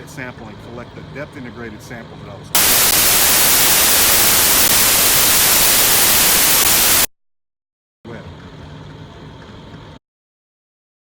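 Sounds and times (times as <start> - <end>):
loud steady hiss: 2.6 - 7.1.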